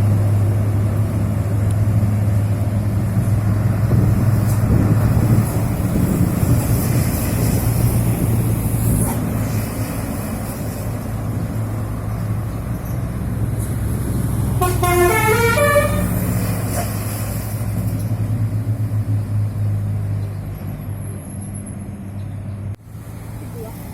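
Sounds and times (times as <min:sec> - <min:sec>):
vehicle engine humming: 0:00.0 - 0:23.9
wind on microphone: 0:03.0 - 0:09.4.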